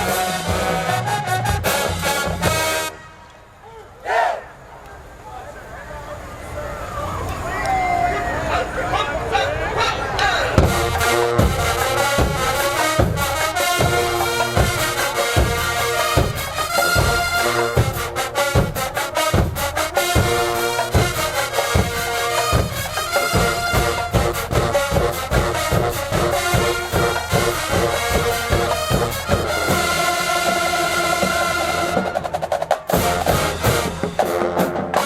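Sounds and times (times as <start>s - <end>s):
marching band playing: 0.0s - 3.4s, 6.2s - 35.0s
brass chords: 0.0s - 4.4s, 8.1s - 35.0s
hard-hit drum beat: 10.5s - 35.0s.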